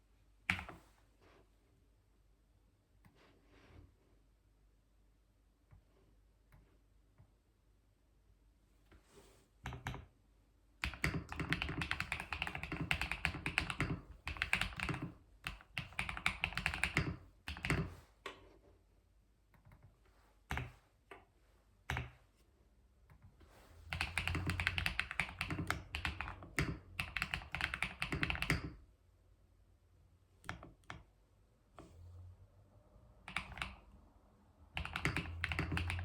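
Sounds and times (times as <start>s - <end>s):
typing on computer keyboard: 9.7s - 10.1s, 10.8s - 17.9s, 23.9s - 28.8s, 33.2s - 34.0s, 34.7s - 36.0s.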